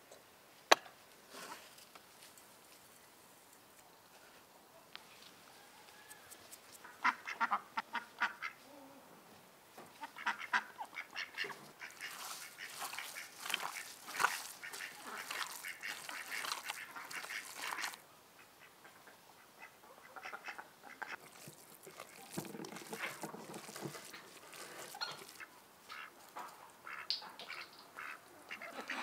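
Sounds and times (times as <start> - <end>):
birds quacking: 10.0 - 26.2, 26.8 - 29.0.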